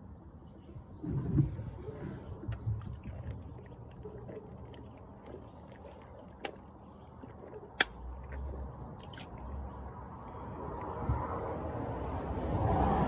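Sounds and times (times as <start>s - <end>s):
person gulping a drink: 2.3s - 9.9s.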